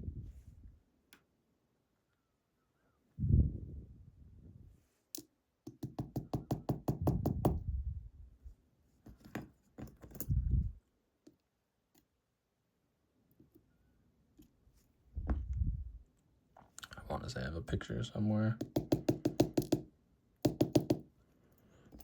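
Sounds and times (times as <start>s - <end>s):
lock knocking on hard surface: 18.6s - 21.0s.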